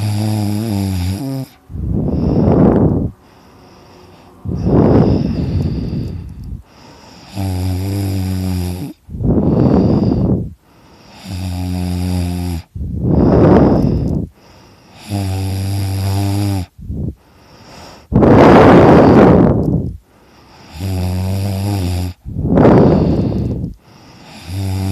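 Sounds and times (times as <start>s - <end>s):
man snoring loudly: 0.0s - 10.4s, 11.0s - 14.1s, 14.9s - 16.8s, 20.5s - 24.9s
rushing breathy breath: 1.4s - 7.5s, 8.9s - 11.3s, 12.6s - 15.2s, 16.7s - 20.8s, 22.2s - 24.9s.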